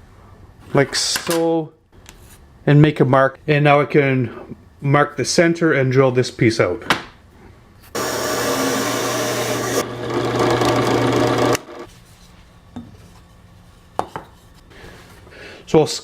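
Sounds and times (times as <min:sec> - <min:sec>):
power drill boring wood: 0:08.0 - 0:11.9.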